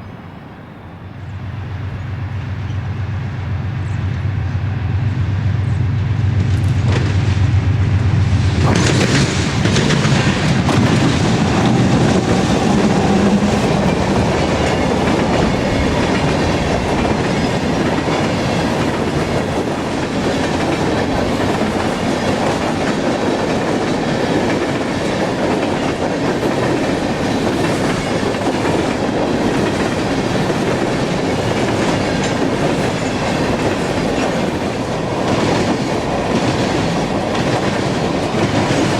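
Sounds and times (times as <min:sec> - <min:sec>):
diesel locomotive engine hum: 0:00.0 - 0:38.9
freight cars rolling past: 0:02.0 - 0:21.7
wheels clicking over rail joints: 0:08.6 - 0:38.9.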